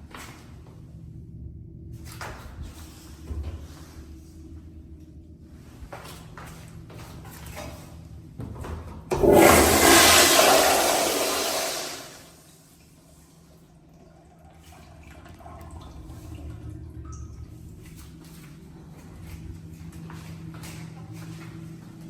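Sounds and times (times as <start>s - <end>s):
toilet flushing water rush: 9.1s - 12.5s.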